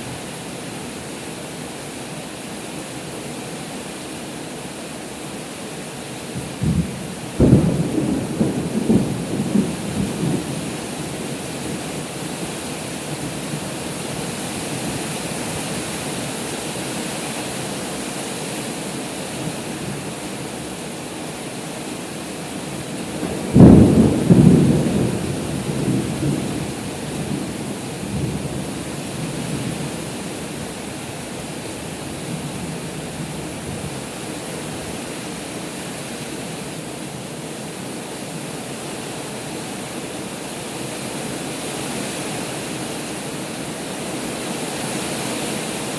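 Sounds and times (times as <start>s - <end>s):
heavy rain pouring: 0.0s - 45.9s
thunder rumbling: 6.4s - 12.5s, 23.2s - 30.0s.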